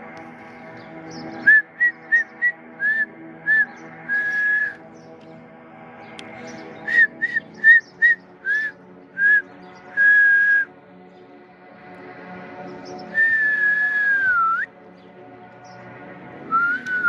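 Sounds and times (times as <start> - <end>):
person whistling: 1.5 - 4.8, 10.0 - 10.7, 13.2 - 14.7, 16.5 - 17.0.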